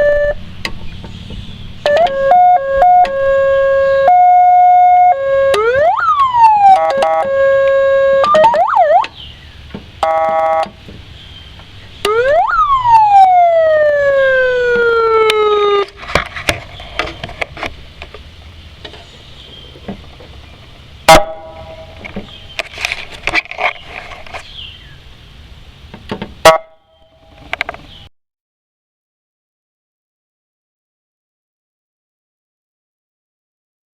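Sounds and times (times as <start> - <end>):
electronic siren: 0.0 - 0.5, 1.8 - 9.2, 10.0 - 10.7, 12.0 - 15.9, 21.1 - 22.0.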